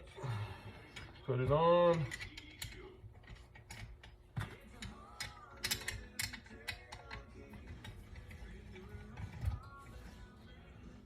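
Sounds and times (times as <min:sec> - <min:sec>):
light metal clicks and taps: 0:01.9 - 0:08.9.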